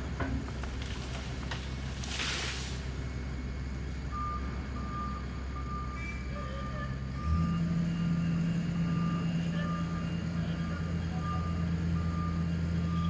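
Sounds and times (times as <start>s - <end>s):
diesel truck engine running: 0.0s - 13.0s
reversing beeper beeping: 4.1s - 13.0s.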